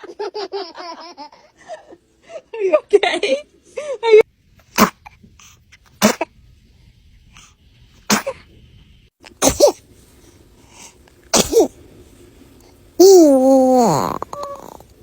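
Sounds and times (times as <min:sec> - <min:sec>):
baby sneezing: 0:04.7 - 0:05.0, 0:06.0 - 0:06.3, 0:08.1 - 0:08.4, 0:09.4 - 0:09.8, 0:11.3 - 0:11.8, 0:13.0 - 0:14.8.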